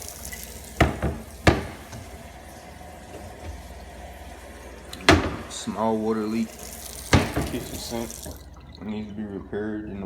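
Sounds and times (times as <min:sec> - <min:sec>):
cabinet doors banging open: 0:00.8 - 0:02.2, 0:05.0 - 0:05.6, 0:07.1 - 0:07.9.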